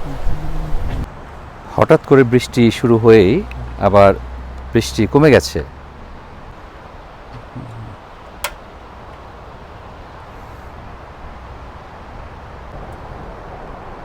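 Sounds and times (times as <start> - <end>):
steady wind: 0.0 - 14.0
gas stove igniter click: 8.4 - 8.6.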